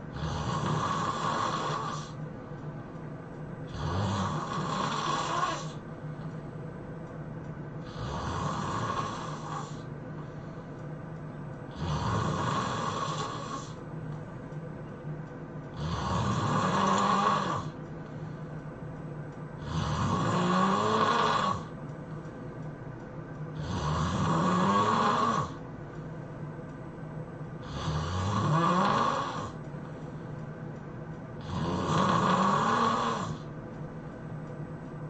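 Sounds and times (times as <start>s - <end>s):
quiet breathing: 0.0s - 7.2s, 7.8s - 34.6s
person snoring loudly: 0.1s - 2.2s, 3.7s - 5.8s, 7.8s - 9.9s, 11.7s - 13.8s, 15.8s - 17.8s, 19.6s - 21.7s, 23.6s - 25.6s, 27.6s - 29.6s, 31.4s - 33.5s.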